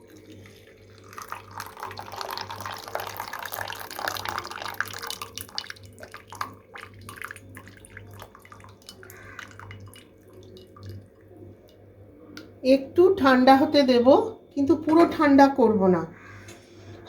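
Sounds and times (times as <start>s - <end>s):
liquid pouring into a container: 0.0s - 11.8s
drips and small clicks: 0.0s - 12.5s.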